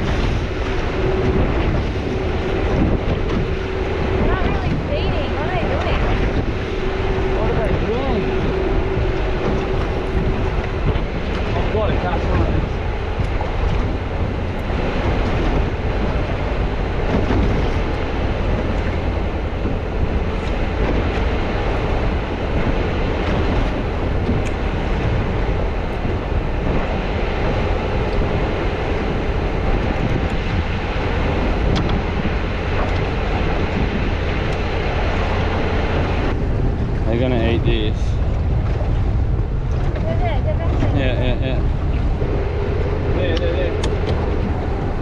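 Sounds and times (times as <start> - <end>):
motorboat engine drone: 0.0 - 45.0
wind buffeting microphone: 0.0 - 45.0.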